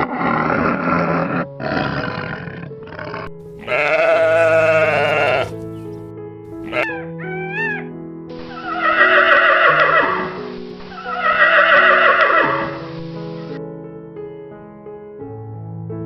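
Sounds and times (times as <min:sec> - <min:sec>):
farm animal bleating: 0:03.4 - 0:06.9
background music with held notes: 0:03.4 - 0:16.0.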